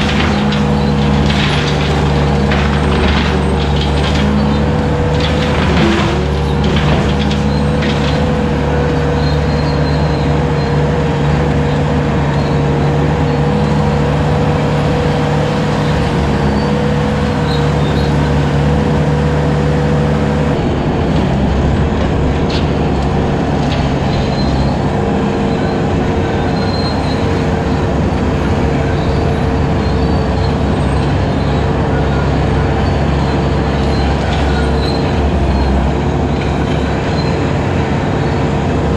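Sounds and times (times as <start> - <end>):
diesel engine running: 0.0 - 38.9
sharp knocks: 20.5 - 28.0.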